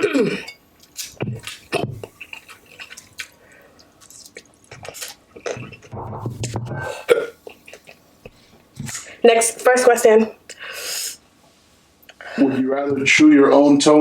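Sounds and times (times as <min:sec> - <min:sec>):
person chewing noodles: 0:01.7 - 0:06.0.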